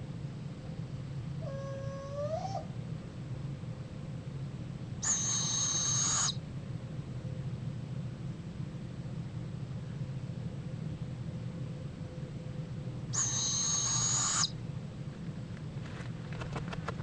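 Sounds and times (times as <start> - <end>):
owl hooting: 1.4 - 2.8, 5.0 - 6.4, 13.1 - 14.6
owl hissing screech: 5.0 - 6.4, 13.1 - 14.6.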